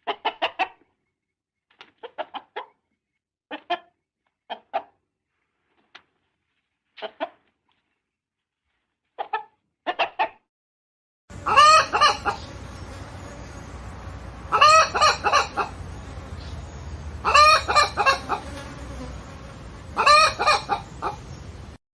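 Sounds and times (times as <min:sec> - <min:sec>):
hen clucking: 0:00.0 - 0:00.9, 0:02.0 - 0:02.8, 0:03.5 - 0:05.0, 0:07.0 - 0:07.4, 0:09.2 - 0:10.4, 0:11.3 - 0:21.5
steady background noise: 0:11.3 - 0:21.8.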